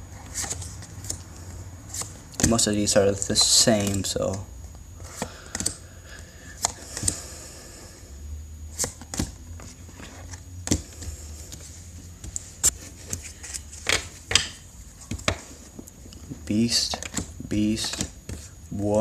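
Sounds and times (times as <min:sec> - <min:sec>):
low steady hum: 0:00.0 - 0:19.0
playing cards flipping: 0:00.2 - 0:01.3, 0:01.9 - 0:04.4, 0:08.8 - 0:15.6, 0:16.7 - 0:18.5.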